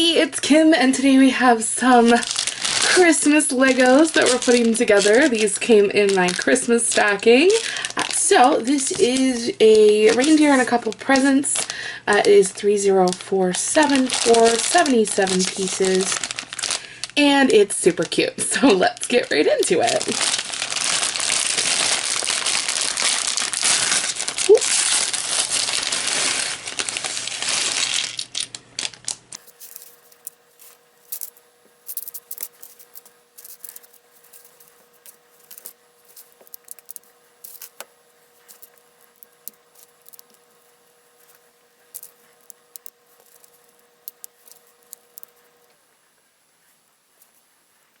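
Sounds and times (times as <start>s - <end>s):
faint steady hum: 0.0s - 48.0s
plastic packaging crinkling and tearing: 1.6s - 45.7s
small plastic pieces clicking: 28.1s - 40.7s, 41.3s - 45.5s.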